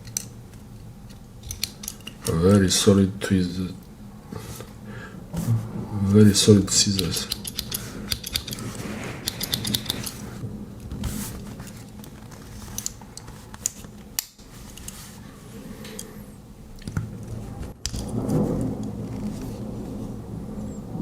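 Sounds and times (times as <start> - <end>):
pocket knife tools clicking: 1.4 - 2.3, 7.0 - 8.6, 9.2 - 10.2.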